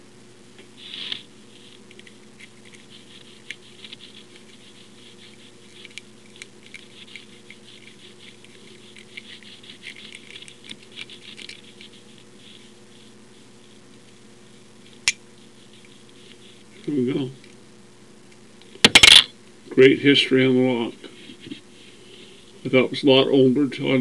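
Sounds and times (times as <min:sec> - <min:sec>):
lock pick scratching and clicking: 0:05.7 - 0:11.7.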